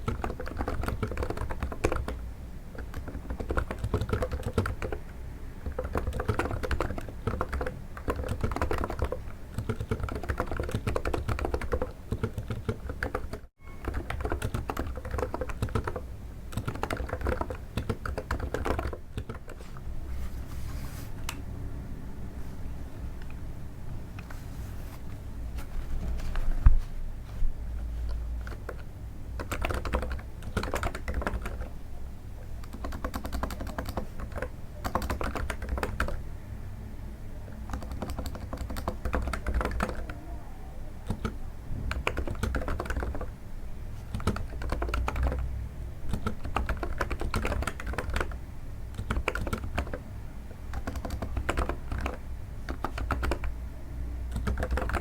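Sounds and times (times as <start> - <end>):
soft keyboard keystrokes: 0.0 - 19.9, 27.9 - 31.8, 32.6 - 36.2, 37.7 - 40.2, 41.0 - 43.3, 44.0 - 45.5, 46.1 - 50.0, 50.7 - 53.6, 54.3 - 55.0.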